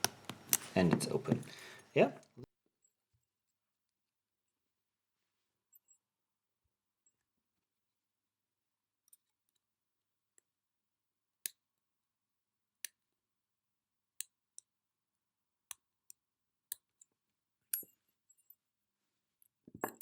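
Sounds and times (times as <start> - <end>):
lock picking clicks: 0.0 - 0.8.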